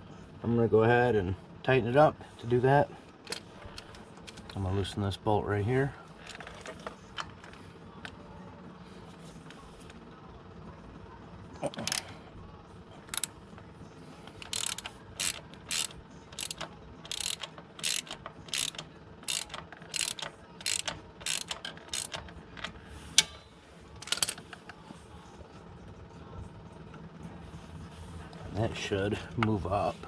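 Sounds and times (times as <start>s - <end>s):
socket ratchet clicking: 11.8s - 12.0s, 13.1s - 13.3s, 14.4s - 22.7s.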